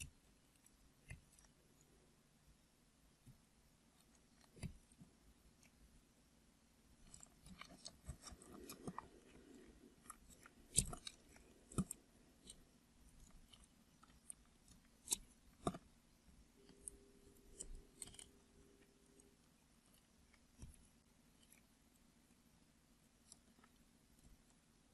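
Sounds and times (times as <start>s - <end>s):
knife cutting soap: 0.0s - 1.9s, 3.2s - 5.8s, 7.0s - 16.0s, 16.6s - 21.7s.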